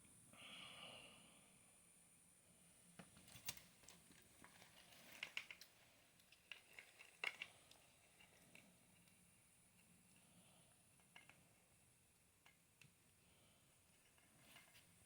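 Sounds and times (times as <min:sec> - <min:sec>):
small parts clicking and tapping: 0:03.0 - 0:13.2.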